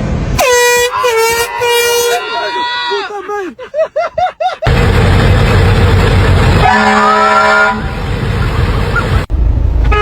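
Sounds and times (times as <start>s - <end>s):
vehicle horn: 0.4s - 2.9s, 6.6s - 8.0s
loud steady noise: 4.6s - 9.3s.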